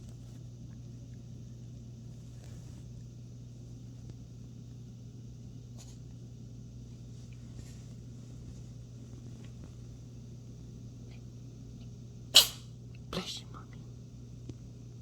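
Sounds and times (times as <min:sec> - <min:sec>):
faint steady low hum: 0:00.0 - 0:15.0
cat sneezing: 0:12.3 - 0:12.8.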